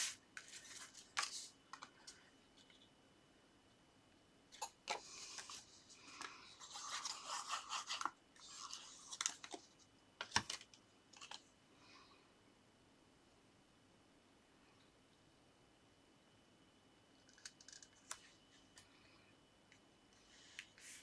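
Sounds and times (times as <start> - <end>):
scratchy rubbing of paper: 6.6 - 9.2.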